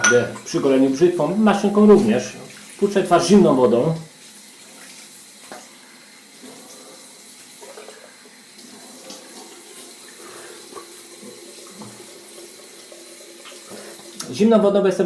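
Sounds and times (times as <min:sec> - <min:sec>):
water splashing: 0:00.0 - 0:14.4
tap running into sink: 0:10.7 - 0:14.3.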